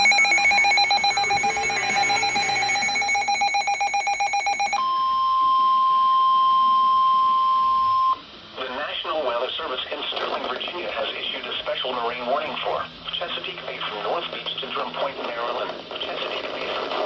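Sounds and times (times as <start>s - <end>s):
pulsing buzzy alarm beeps: 0.0s - 4.8s
steady warning tone: 0.0s - 4.8s.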